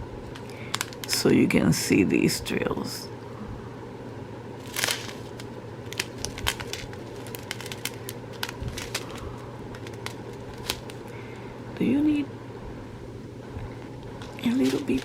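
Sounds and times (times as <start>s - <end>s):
plastic packets crinkling: 0.3s - 1.2s, 4.6s - 11.2s, 14.2s - 15.0s.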